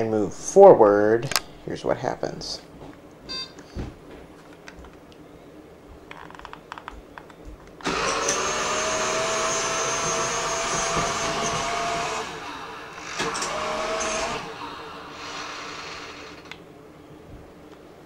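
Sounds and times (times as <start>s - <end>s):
robot vacuum motors whirring: 7.8s - 16.6s.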